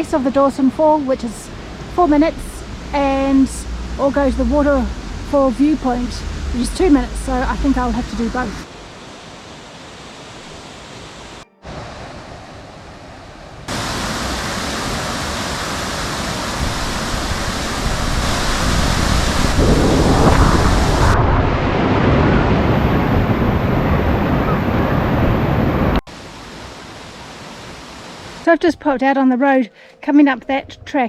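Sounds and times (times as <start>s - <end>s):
waterfall rushing: 0.0s - 28.5s.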